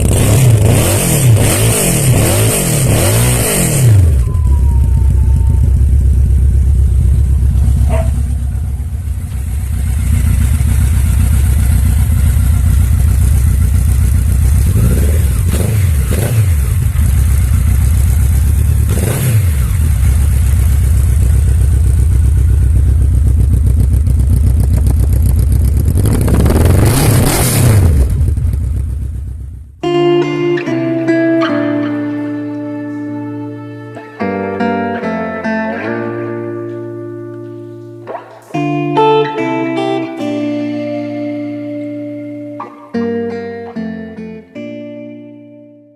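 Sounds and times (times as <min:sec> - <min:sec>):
motorcycle engine revving: 0:00.0 - 0:29.8
guitar music: 0:02.8 - 0:18.3, 0:29.8 - 0:45.9.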